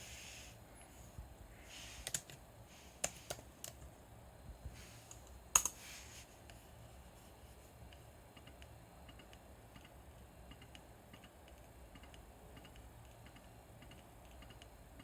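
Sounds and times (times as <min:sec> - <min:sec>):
laptop keyboard and trackpad clicks: 0:05.1 - 0:05.8.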